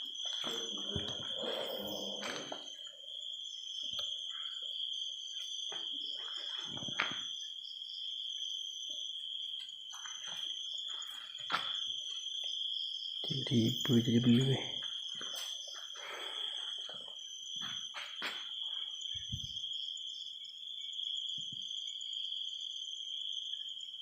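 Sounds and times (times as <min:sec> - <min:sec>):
crickets chirring: 0:00.0 - 0:24.0
knocks and scuffs: 0:00.1 - 0:02.7, 0:16.7 - 0:18.6.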